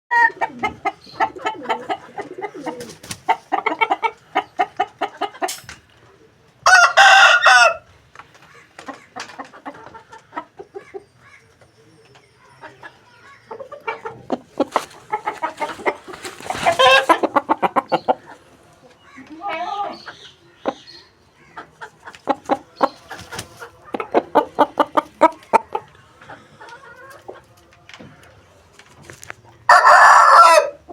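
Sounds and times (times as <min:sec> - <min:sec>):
chicken clucking: 0:00.1 - 0:30.9
rooster crowing: 0:06.6 - 0:07.8, 0:29.7 - 0:30.8.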